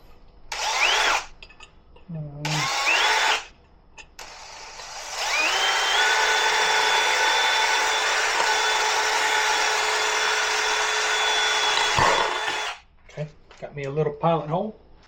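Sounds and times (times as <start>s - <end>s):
electric drill whining through metal: 0.5s - 1.4s, 2.4s - 3.5s, 4.2s - 12.9s.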